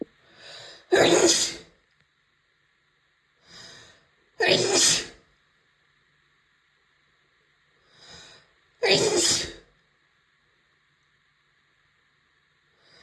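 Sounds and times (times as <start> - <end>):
woman sneezing: 0.9 - 1.6, 4.4 - 5.2, 8.8 - 9.6.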